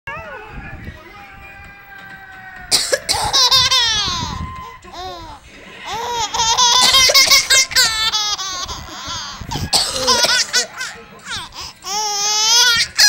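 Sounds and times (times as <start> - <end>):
baby laughing: 3.0 - 13.0
woman coughing: 9.6 - 10.5.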